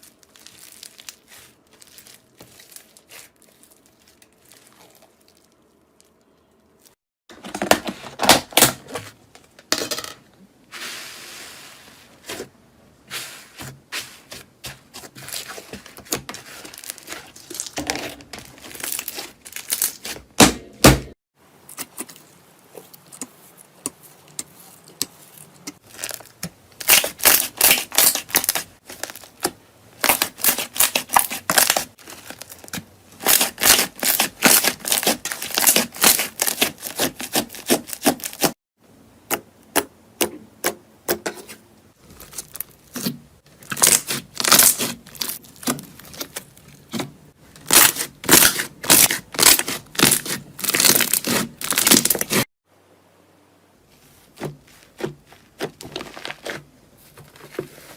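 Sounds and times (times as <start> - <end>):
slime crackling and popping: 0.0 - 6.7, 25.7 - 38.4, 42.2 - 47.0, 47.7 - 52.4.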